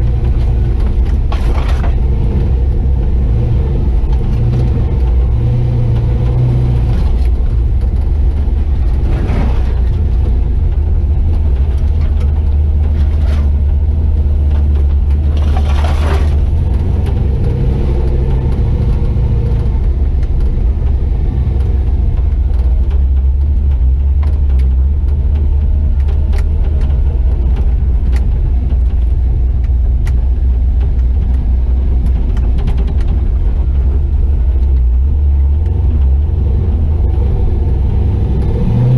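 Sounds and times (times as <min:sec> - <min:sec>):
truck engine droning: 0:00.0 - 0:38.9
clicks and rattles: 0:06.9 - 0:36.2.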